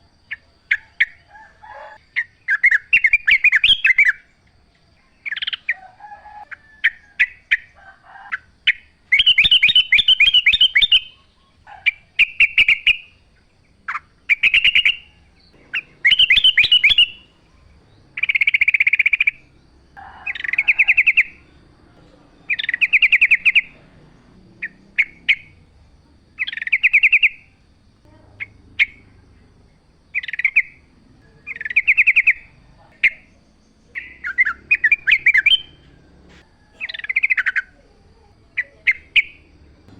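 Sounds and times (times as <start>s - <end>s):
bird singing bubbly warbled phrases: 8.7s - 11.6s, 12.2s - 19.6s, 22.0s - 25.7s, 26.4s - 35.9s.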